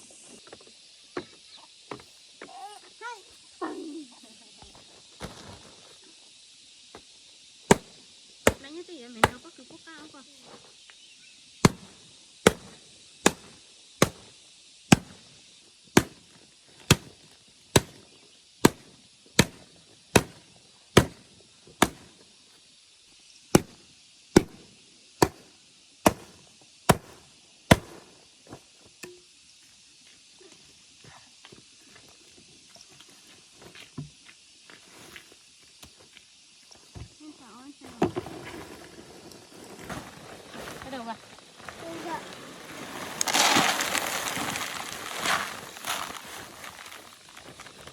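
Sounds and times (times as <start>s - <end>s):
blade chopping palm leaves: 7.7s - 9.4s, 11.6s - 14.3s, 14.9s - 15.2s, 16.0s - 16.2s, 16.9s - 17.1s, 17.7s - 18.0s, 18.6s - 20.4s, 21.0s - 21.2s, 21.8s - 22.1s, 23.5s - 23.8s, 24.4s - 24.6s, 25.2s - 25.4s, 26.0s - 28.1s, 42.7s - 47.9s
faint rustling: 38.3s - 47.9s.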